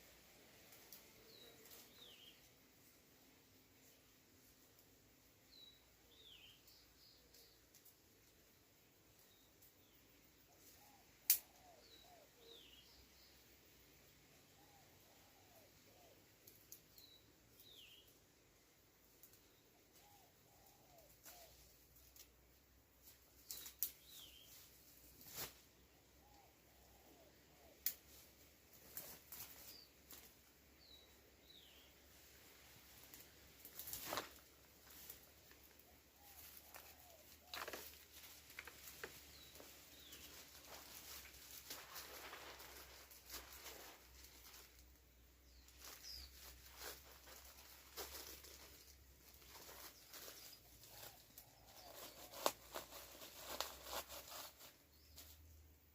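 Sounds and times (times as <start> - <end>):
faint rustling and crackling: 0.0 - 12.9, 14.3 - 26.5, 27.1 - 55.9
bird chirp: 1.2 - 2.6, 5.4 - 8.3, 9.1 - 13.7, 14.3 - 18.2, 23.0 - 25.0, 25.9 - 55.6.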